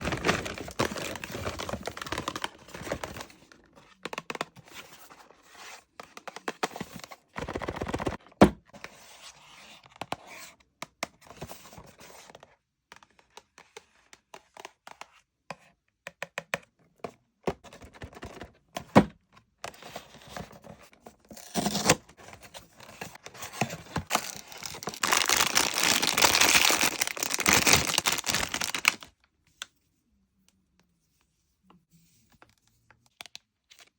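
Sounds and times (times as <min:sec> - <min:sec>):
wrapping crinkling and tearing: 0:00.0 - 0:03.2, 0:24.0 - 0:29.2.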